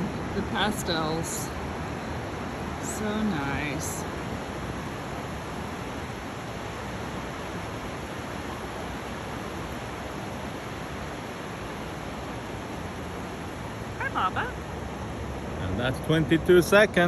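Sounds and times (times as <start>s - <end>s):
ocean surf rushing: 0.0s - 17.0s.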